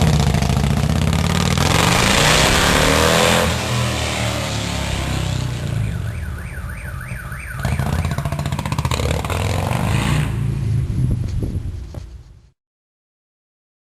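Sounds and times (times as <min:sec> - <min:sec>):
motorcycle engine running: 0:00.0 - 0:05.7
car alarm siren warbling: 0:04.8 - 0:08.4.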